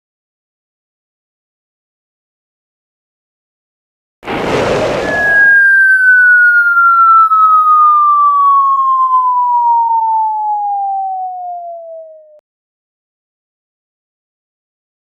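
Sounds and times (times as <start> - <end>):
short rush of noise: 4.3 - 8.6
whistle tone sliding down: 4.7 - 12.4.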